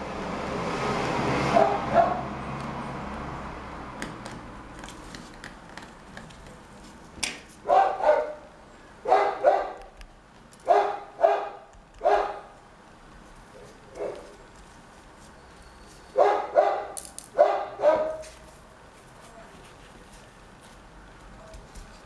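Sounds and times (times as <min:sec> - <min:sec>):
dog barking: 0:01.5 - 0:02.3, 0:07.6 - 0:09.9, 0:10.6 - 0:12.6, 0:13.6 - 0:14.3, 0:16.2 - 0:18.3.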